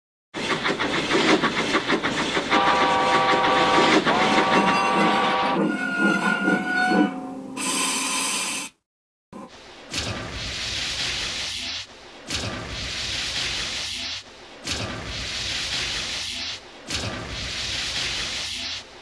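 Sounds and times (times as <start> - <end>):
steam hiss: 0.4 - 4.6, 9.8 - 19.0
toy train chuffing: 0.4 - 5.3
train whistle blasts: 2.5 - 8.7.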